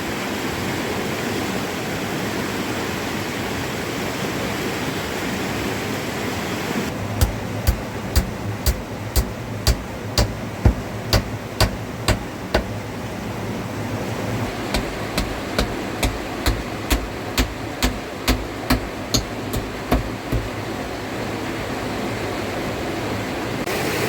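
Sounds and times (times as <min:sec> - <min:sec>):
rapid hammering: 0:06.9 - 0:13.0, 0:14.4 - 0:20.8
steady rushing background: 0:06.9 - 0:20.9.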